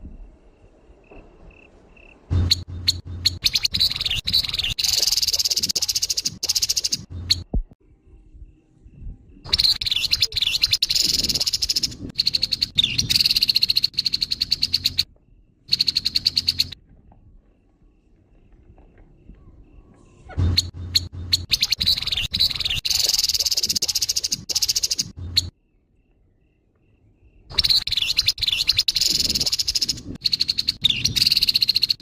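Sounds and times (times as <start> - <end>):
bird rattling chatter: 2.9 - 7.1.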